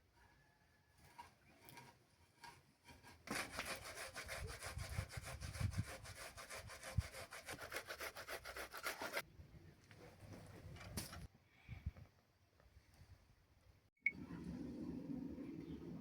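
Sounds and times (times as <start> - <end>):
back-and-forth scraping strokes: 1.0 - 9.2.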